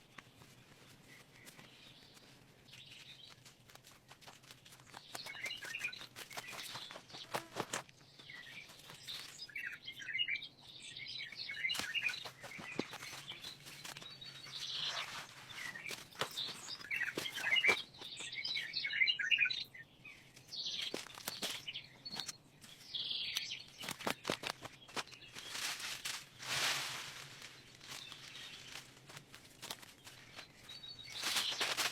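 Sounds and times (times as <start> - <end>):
birds chirping: 4.7 - 31.9.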